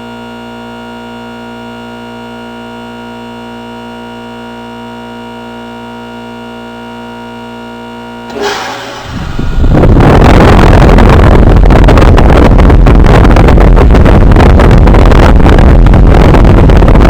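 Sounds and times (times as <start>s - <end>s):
loud whoosh of reversing valve: 8.3s - 11.5s
heat pump compressor humming: 8.3s - 14.6s
rising rush of noise: 8.3s - 14.7s.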